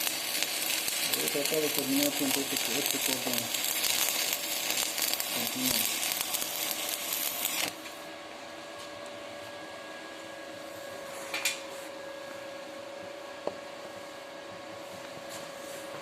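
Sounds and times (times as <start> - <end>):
welding arc crackling and sizzling: 0.0 - 8.0.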